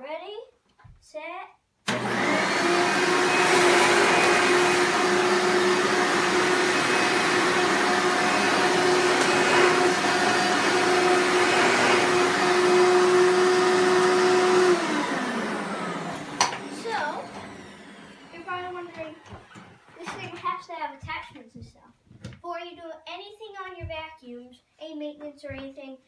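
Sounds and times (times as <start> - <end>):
upright vacuum cleaner whining: 1.9 - 20.5.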